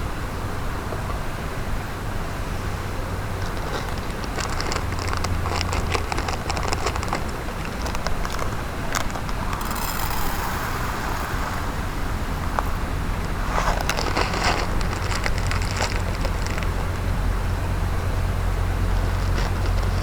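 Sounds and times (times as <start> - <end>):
mountain stream running: 0.1 - 20.0
sharp crackles and clicks: 3.3 - 17.7, 18.7 - 20.0
high hiss: 9.6 - 13.6.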